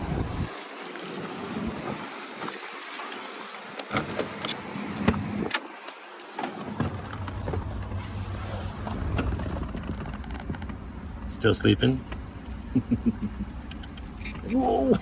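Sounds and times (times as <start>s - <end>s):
rain hiss: 0.0s - 3.8s
low steady hum: 6.8s - 15.0s.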